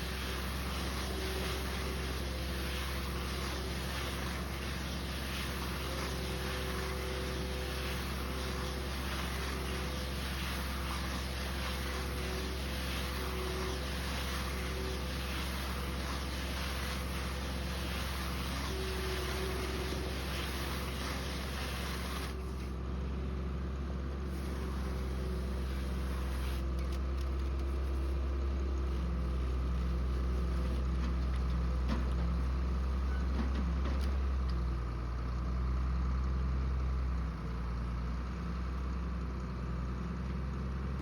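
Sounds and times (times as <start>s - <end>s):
tractor engine droning: 0.0s - 27.9s.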